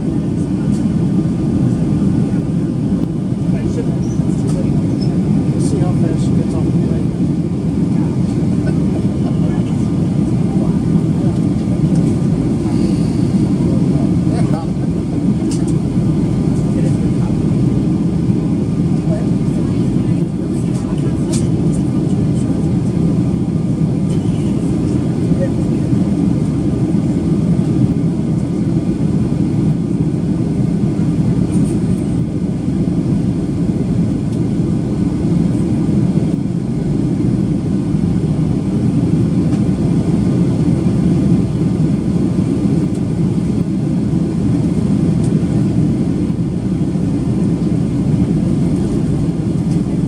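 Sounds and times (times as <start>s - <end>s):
airplane cabin roar: 0.0s - 50.0s.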